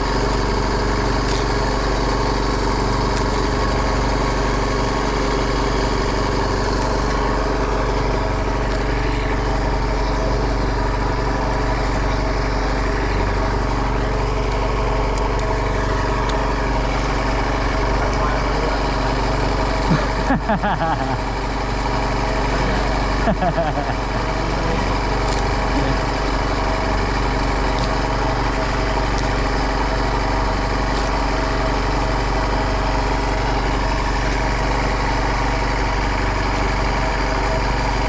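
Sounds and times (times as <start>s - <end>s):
boat engine running: 0.0s - 38.0s.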